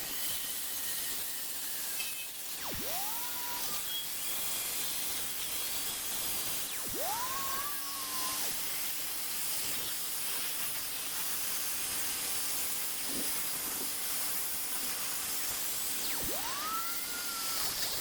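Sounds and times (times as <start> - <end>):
rising whistled note: 2.6 - 4.2, 6.7 - 8.8, 16.0 - 18.0.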